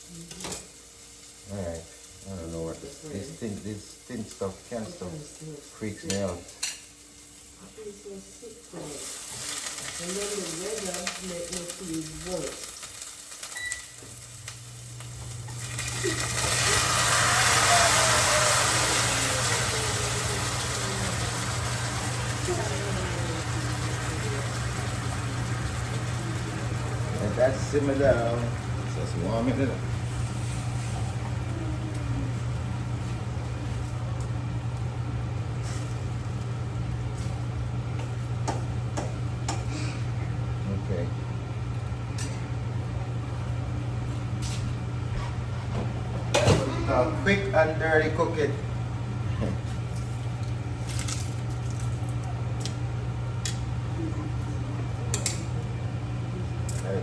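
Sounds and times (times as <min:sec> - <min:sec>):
low mechanical hum: 0:00.0 - 0:57.0.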